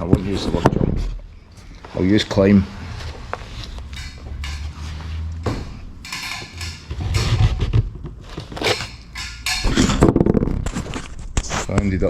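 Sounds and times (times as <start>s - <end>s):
scuffs and rustles on ladder: 0.0s - 10.0s
feet thudding on ladder rungs: 1.6s - 10.0s.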